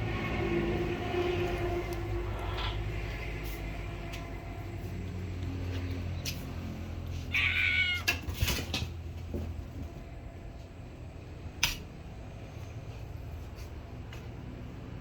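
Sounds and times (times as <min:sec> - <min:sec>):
pet animal whining: 0:07.2 - 0:08.2.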